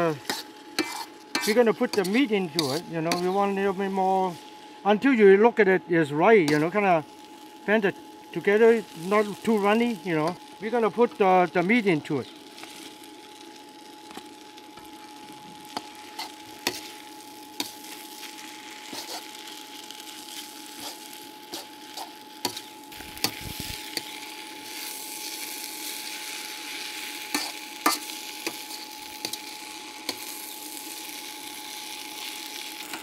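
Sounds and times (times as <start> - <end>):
food sizzling in a pan: 0.0 - 4.9, 6.3 - 33.0
spatula scraping and knocking pan: 0.2 - 3.4, 27.3 - 29.4.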